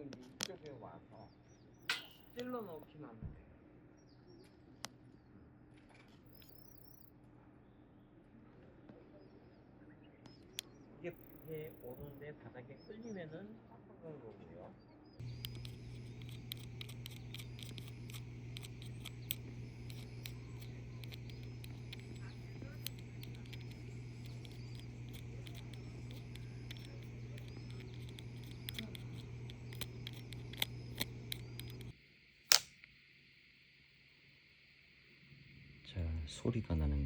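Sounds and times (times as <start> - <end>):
sharp clicks: 15.2 - 33.0
steady low hum: 15.2 - 37.0.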